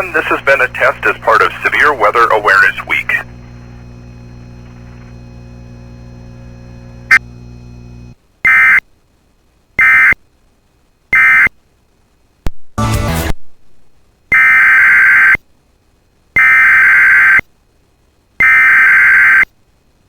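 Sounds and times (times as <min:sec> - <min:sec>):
low electrical hum: 0:00.0 - 0:12.7, 0:13.3 - 0:20.0
digital data tone bursts: 0:18.4 - 0:19.4.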